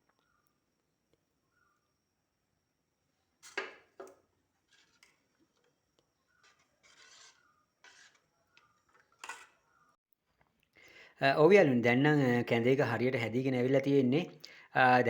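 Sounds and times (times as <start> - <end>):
spoon scraping pot bottom: 3.4 - 4.0, 4.6 - 9.8.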